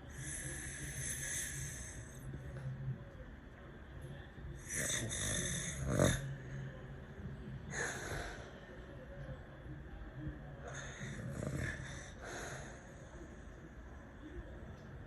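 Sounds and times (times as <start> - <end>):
person snoring: 4.6 - 6.2, 10.8 - 12.2.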